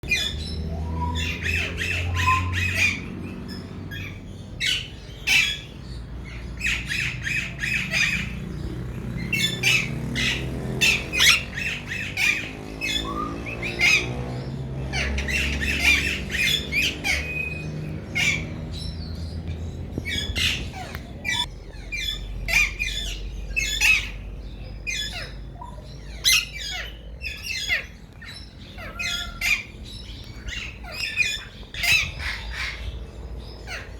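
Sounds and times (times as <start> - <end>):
parakeets squawking: 0.0 - 33.9
steady low rumble: 14.4 - 26.2.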